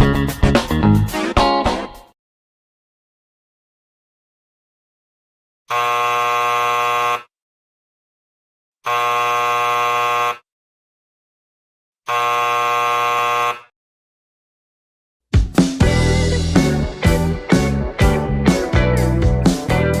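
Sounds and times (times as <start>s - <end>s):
electric buzzer: 5.7s - 7.4s, 8.8s - 10.5s, 12.0s - 13.7s.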